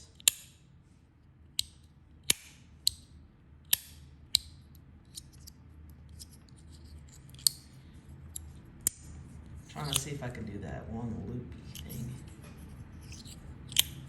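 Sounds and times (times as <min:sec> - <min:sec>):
metal fidget slider clacking: 0:05.1 - 0:07.6, 0:09.7 - 0:10.1, 0:11.6 - 0:12.1, 0:13.0 - 0:14.0.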